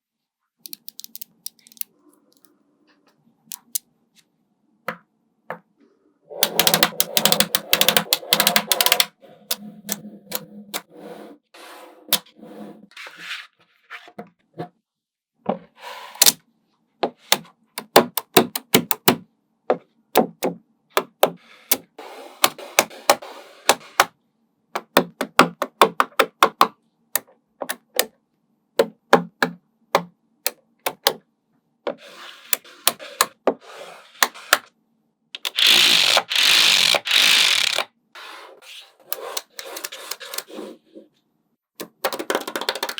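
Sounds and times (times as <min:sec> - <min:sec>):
magnetic balls clicking together: 0:00.7 - 0:01.9, 0:03.5 - 0:03.8, 0:06.4 - 0:10.8, 0:35.4 - 0:37.9, 0:41.8 - 0:42.9.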